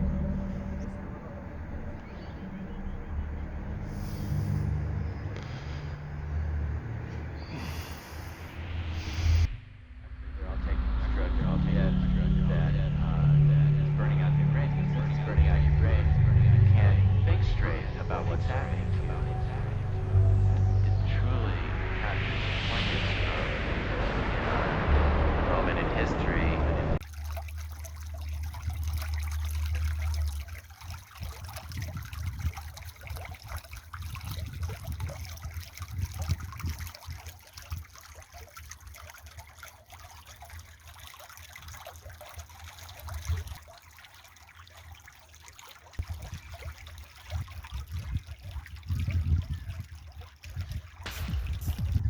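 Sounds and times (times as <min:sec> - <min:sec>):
water trickling and splashing: 0:00.0 - 0:09.5, 0:12.1 - 0:24.0, 0:27.0 - 0:52.0
low rumble: 0:00.0 - 0:30.5, 0:51.1 - 0:52.0.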